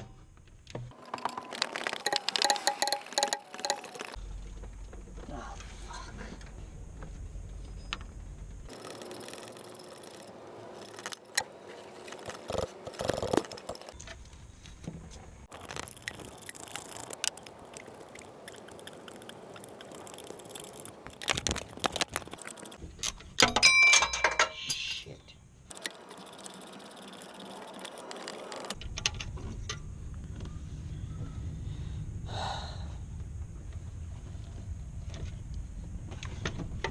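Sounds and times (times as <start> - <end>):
metal tools clinking and rattling: 0.9 - 4.2.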